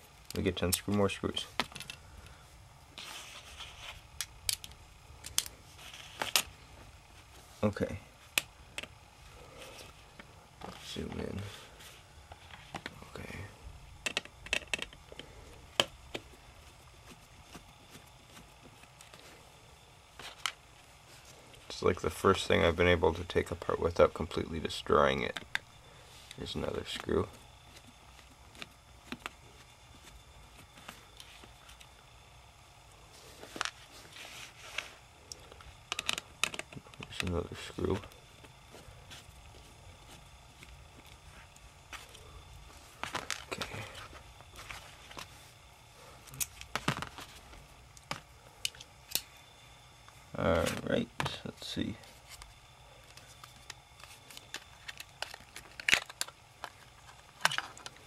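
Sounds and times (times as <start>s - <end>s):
plastic clicks and crackles: 14.0s - 16.2s, 35.5s - 37.4s, 52.4s - 58.0s.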